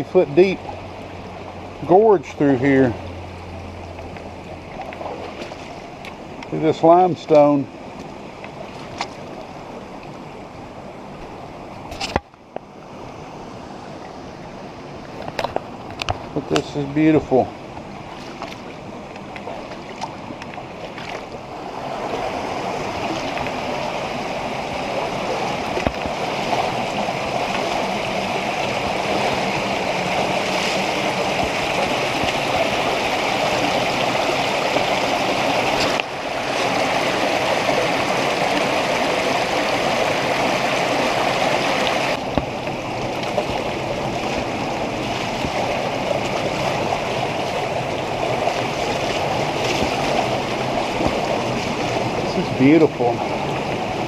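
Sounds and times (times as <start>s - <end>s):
stream rushing over rock: 0.0s - 54.0s.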